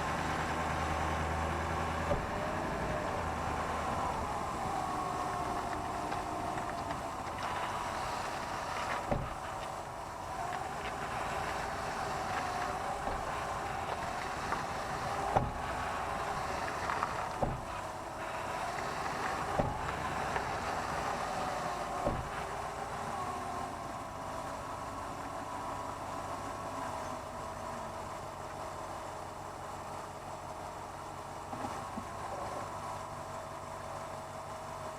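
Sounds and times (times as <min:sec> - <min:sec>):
vehicle running noise: 0:00.0 - 0:34.9
axle sharp pops: 0:03.5 - 0:09.8.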